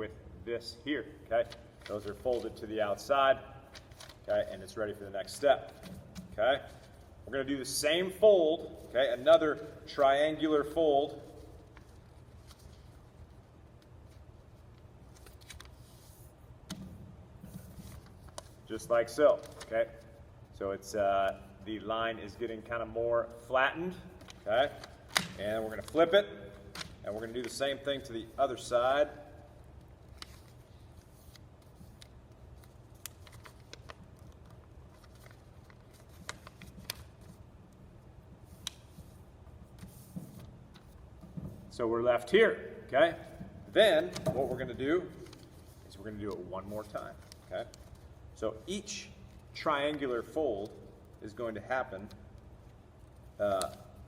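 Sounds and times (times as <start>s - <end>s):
paper rustling and crackling: 1.4s - 2.7s, 3.6s - 4.4s, 11.3s - 16.3s, 17.4s - 20.1s, 24.2s - 28.0s, 29.6s - 37.5s, 44.0s - 48.2s.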